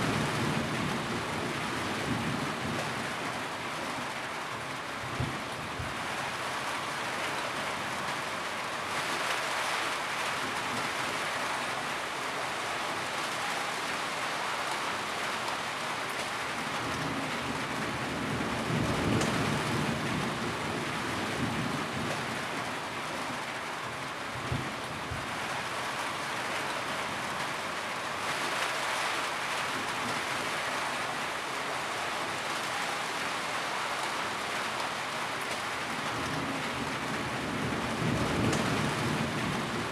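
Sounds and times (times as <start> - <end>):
steady rain falling: 0.0 - 39.9
low rumble of thunder: 16.7 - 22.6, 24.4 - 25.3, 36.0 - 39.9.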